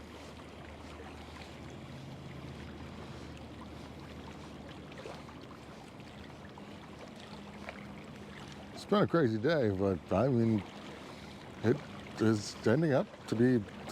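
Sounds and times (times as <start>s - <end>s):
low engine drone: 0.0s - 13.9s
water lapping and gurgling: 0.0s - 13.9s.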